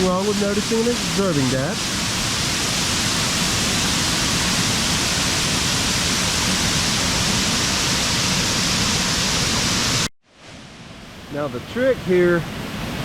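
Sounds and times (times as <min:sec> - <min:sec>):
waterfall rushing: 0:00.0 - 0:10.1.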